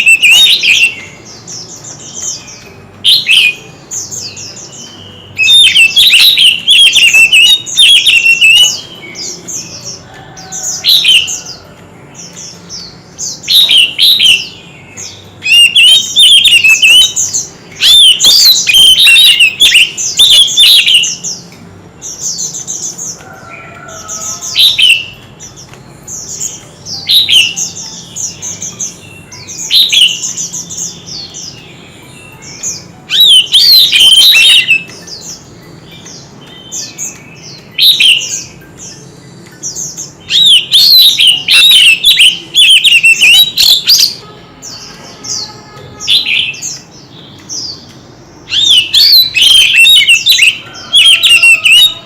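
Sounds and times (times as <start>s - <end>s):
bird singing whistled phrases: 0.0s - 1.2s, 4.2s - 9.0s, 13.5s - 21.3s, 26.9s - 32.4s, 33.1s - 35.0s, 40.3s - 44.8s, 48.5s - 52.0s.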